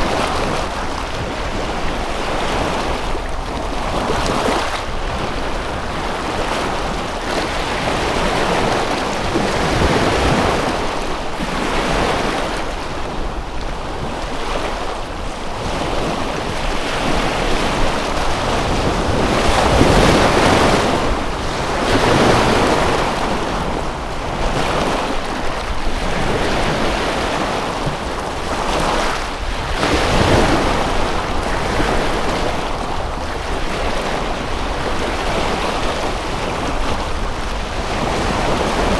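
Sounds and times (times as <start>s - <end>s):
waves washing on shore: 0.0s - 38.9s
wind buffeting microphone: 0.0s - 38.9s.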